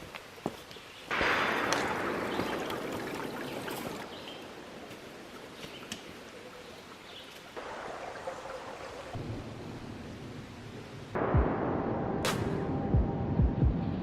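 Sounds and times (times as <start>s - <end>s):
stream flowing: 1.1s - 11.2s.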